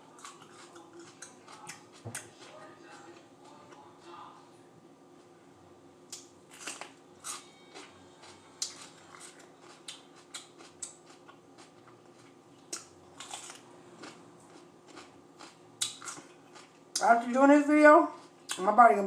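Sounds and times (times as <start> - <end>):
crisp chewing crunches: 0.0 - 3.8, 6.1 - 17.0.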